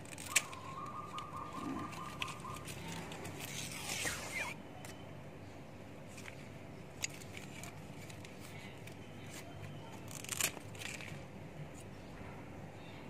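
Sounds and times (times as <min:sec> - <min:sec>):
leaf snapping: 0:00.0 - 0:01.4.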